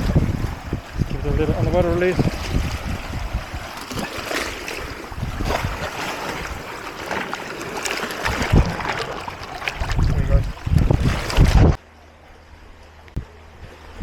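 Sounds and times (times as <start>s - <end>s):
wind buffeting microphone: 0.0s - 7.1s, 8.1s - 11.8s
seawater sloshing and splashing: 0.0s - 11.8s
water trickling: 2.6s - 11.8s.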